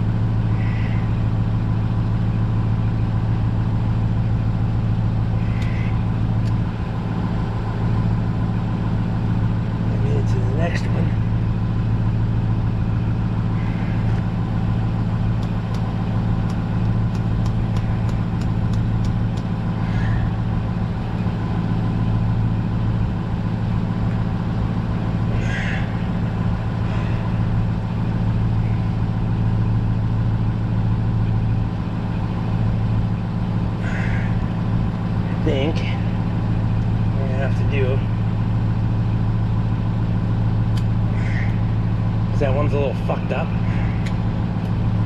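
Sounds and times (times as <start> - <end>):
low machinery hum: 0.0 - 45.0.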